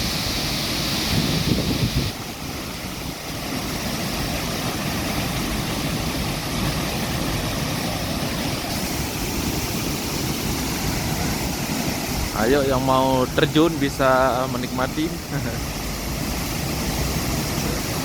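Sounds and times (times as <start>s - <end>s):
waterfall roaring: 0.0s - 18.0s.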